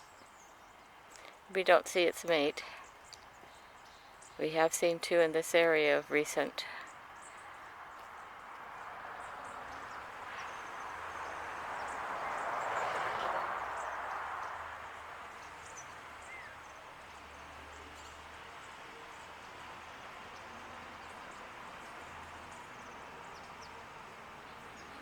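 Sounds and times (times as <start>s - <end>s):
vehicle passing on road: 7.4s - 25.0s.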